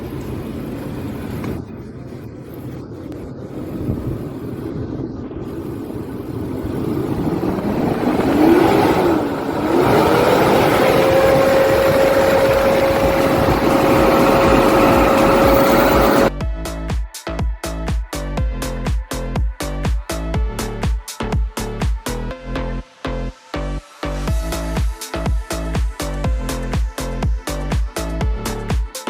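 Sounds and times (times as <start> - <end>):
loud rushing cooling fan: 0.0 - 16.3
engine revving at high revs: 5.5 - 16.3.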